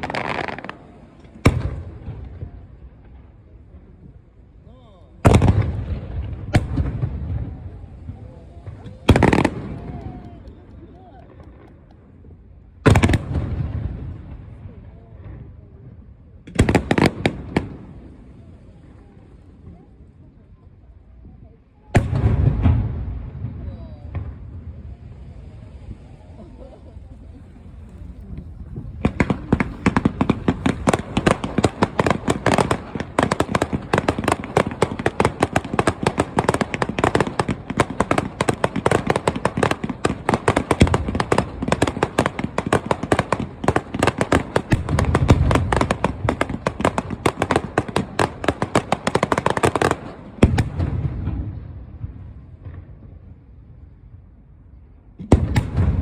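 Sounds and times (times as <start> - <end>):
fireworks bangs and crackles: 0.0 - 56.0
deep firework boom: 5.2 - 10.3, 12.8 - 20.0, 21.9 - 26.3, 27.6 - 48.6, 50.4 - 53.6, 55.2 - 56.0.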